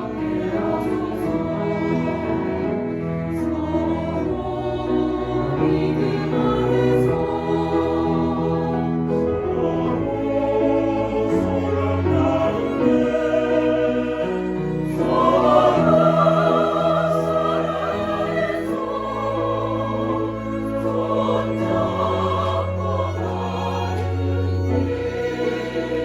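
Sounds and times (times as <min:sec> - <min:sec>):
church choir singing: 0:00.0 - 0:26.0
instrumental accompaniment: 0:00.0 - 0:26.0.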